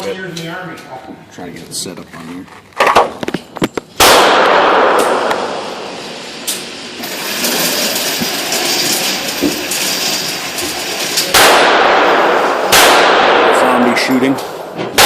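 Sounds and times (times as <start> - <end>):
pistol shot: 3.9 - 6.7, 11.3 - 15.0
gunshot echo: 4.0 - 7.1, 11.3 - 15.0.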